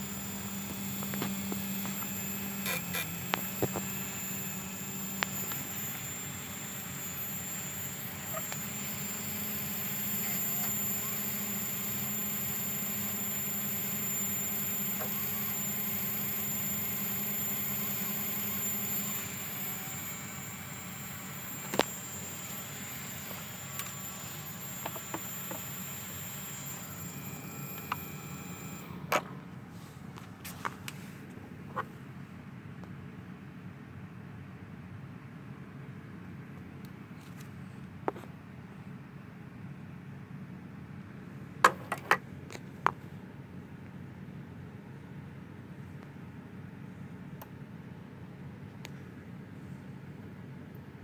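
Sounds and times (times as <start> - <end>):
motor clicking: 0.0 - 29.6
quadcopter motors whining: 0.0 - 31.9.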